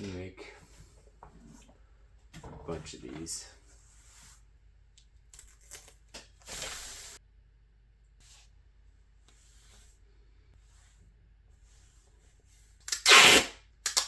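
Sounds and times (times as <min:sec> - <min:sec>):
duct tape ripping: 0:12.9 - 0:14.0
tape pulled off the roll: 0:12.9 - 0:14.0.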